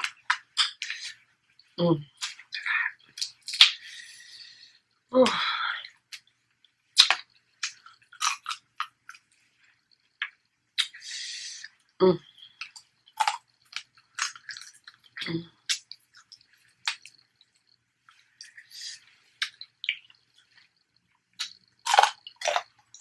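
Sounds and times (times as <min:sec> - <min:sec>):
chewing clicks and crunches: 0:07.0 - 0:09.3, 0:12.5 - 0:18.7, 0:19.4 - 0:20.8, 0:21.4 - 0:23.0.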